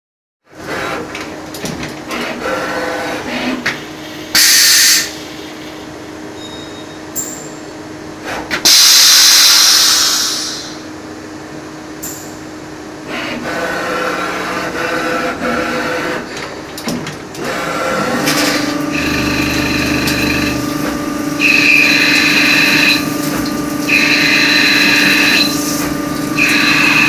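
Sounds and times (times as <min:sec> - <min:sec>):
loud hiss bursts: 0:04.3 - 0:05.5, 0:08.6 - 0:10.8
lathe running with steady hum: 0:12.9 - 0:16.7, 0:17.3 - 0:27.0.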